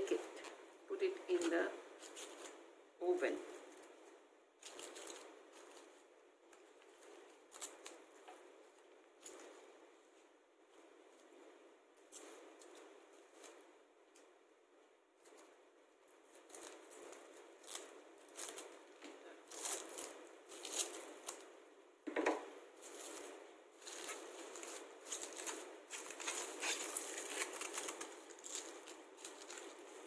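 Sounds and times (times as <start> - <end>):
cling film crackling and rustling: 3.2 - 14.3, 15.2 - 21.6, 22.8 - 30.0
knock: 22.1 - 22.4.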